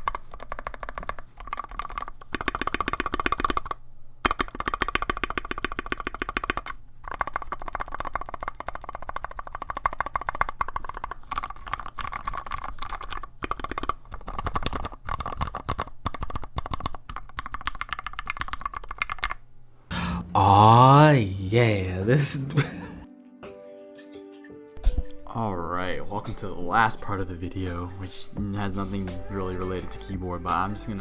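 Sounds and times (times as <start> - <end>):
mechanical keyboard typing: 0.0 - 19.4.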